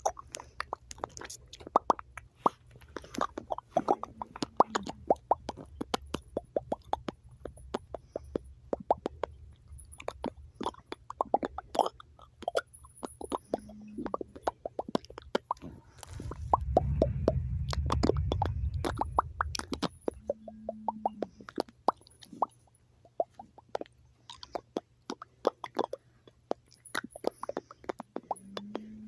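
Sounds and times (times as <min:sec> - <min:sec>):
low rumble: 0:15.6 - 0:21.6.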